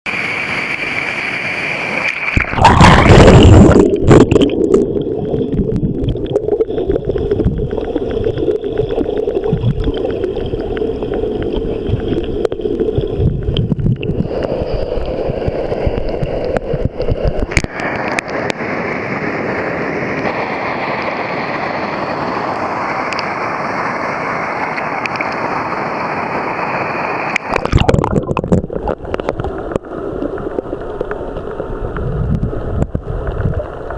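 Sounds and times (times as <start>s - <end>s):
river water gurgling and rushing: 0.1s - 33.9s
loud splashing: 1.9s - 10.2s.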